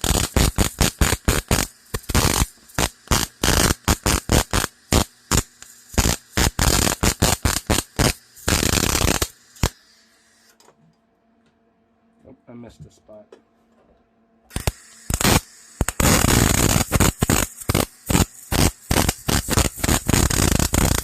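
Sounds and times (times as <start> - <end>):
electric arc welding: 0.0 - 10.1, 14.5 - 21.0.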